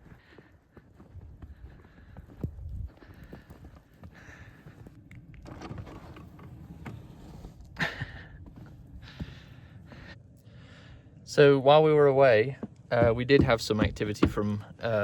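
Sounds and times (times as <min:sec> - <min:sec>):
footsteps: 0:12.4 - 0:15.0
handling noises: 0:12.4 - 0:15.0.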